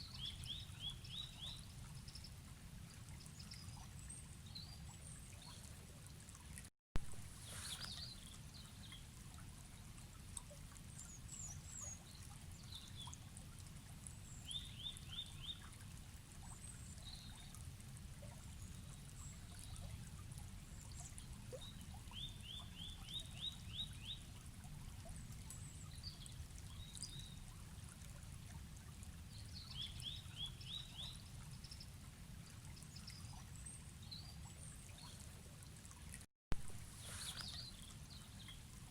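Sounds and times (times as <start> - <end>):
forest river flowing: 7.1 - 8.6, 36.6 - 38.9.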